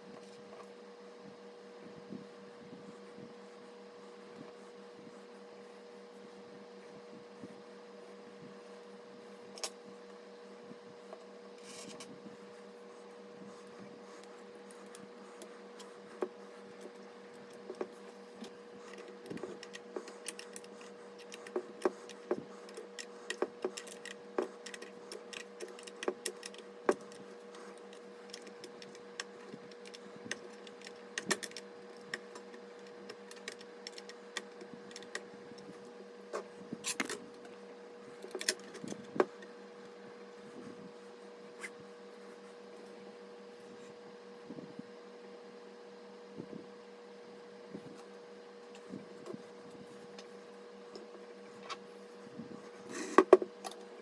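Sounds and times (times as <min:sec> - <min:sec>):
steady low hum: 0:00.0 - 0:54.0
computer parts clicking and tapping: 0:16.2 - 0:35.3.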